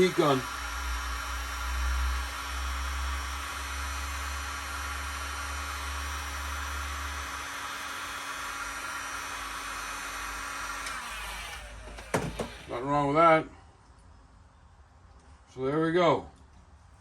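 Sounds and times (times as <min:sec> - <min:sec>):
heat gun blowing: 0:00.0 - 0:12.8.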